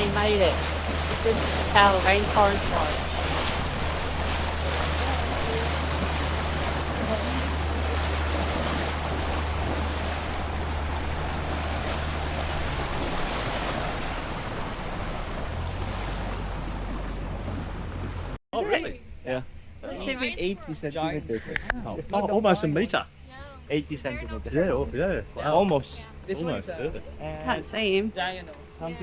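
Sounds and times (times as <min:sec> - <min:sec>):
boat motor hum: 0:00.0 - 0:18.4, 0:20.0 - 0:29.0
wind and water rushing: 0:00.0 - 0:18.4.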